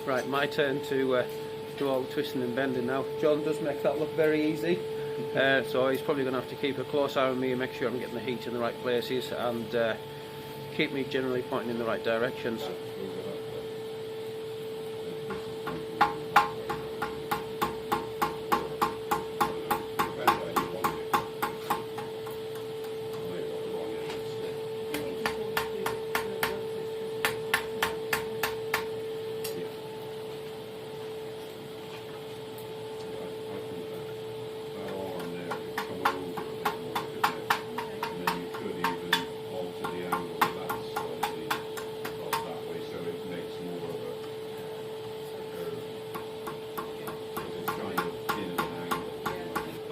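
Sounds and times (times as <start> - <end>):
steady hum: 0.0 - 49.9
hammer striking steel on anvil: 15.3 - 22.4, 24.9 - 26.6, 35.2 - 42.5, 46.1 - 49.8.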